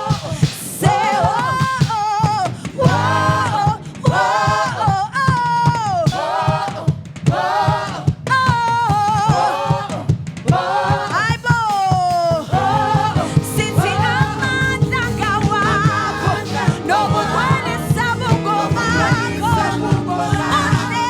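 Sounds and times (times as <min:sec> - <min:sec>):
gospel singing: 0:00.0 - 0:21.0
steady low beat: 0:02.8 - 0:04.8, 0:12.5 - 0:21.0.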